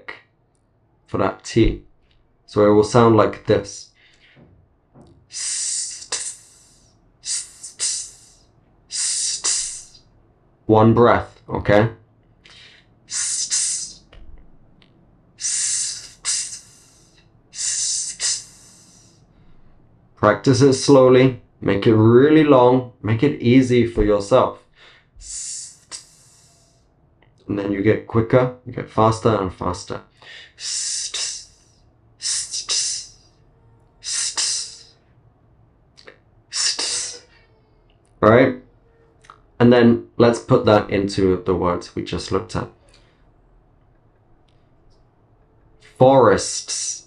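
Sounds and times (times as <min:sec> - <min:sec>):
man making hissed st sound: 0:05.3 - 0:10.0, 0:12.5 - 0:14.2, 0:15.4 - 0:19.3, 0:25.2 - 0:26.9, 0:30.5 - 0:33.3, 0:34.0 - 0:35.0, 0:36.0 - 0:37.4, 0:45.8 - 0:47.0.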